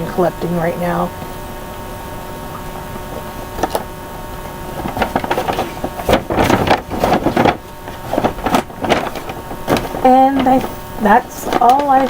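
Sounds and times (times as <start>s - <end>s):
plastic toys rustling and clattering: 4.7s - 12.0s.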